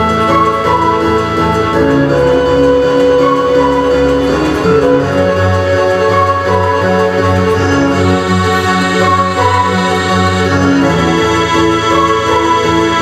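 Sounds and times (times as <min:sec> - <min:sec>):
organ-like keyboard chords: 0:00.0 - 0:13.0.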